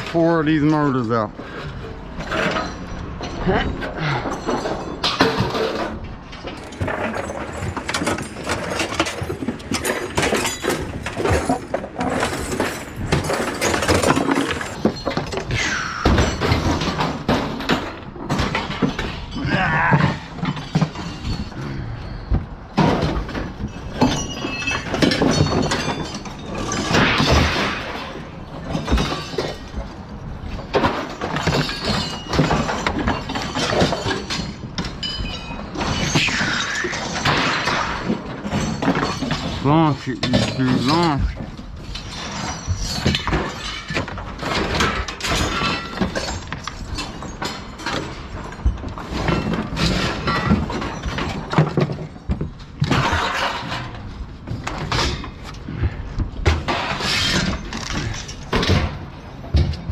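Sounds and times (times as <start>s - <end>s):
scrap metal clanking and crashing: 0.0s - 59.9s.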